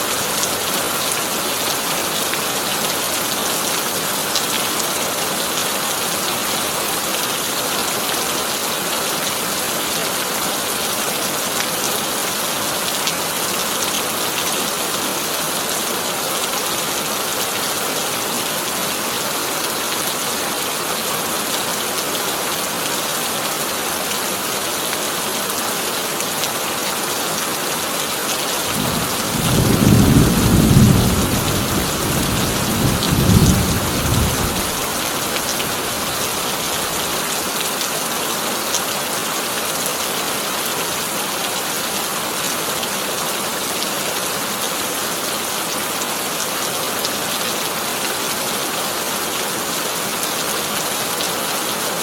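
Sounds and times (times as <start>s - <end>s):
heavy rain on a tin roof: 0.0s - 52.0s
thunder rumbling: 28.7s - 35.0s.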